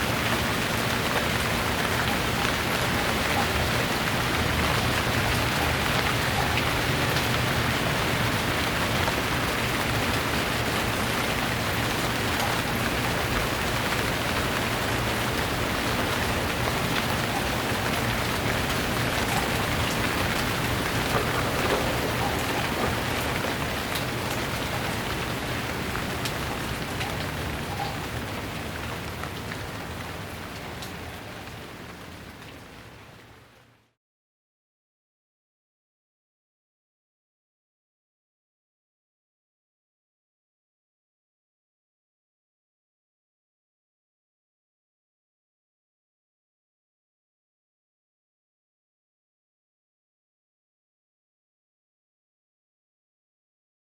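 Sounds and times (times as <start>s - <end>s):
rain falling: 0.0s - 33.8s.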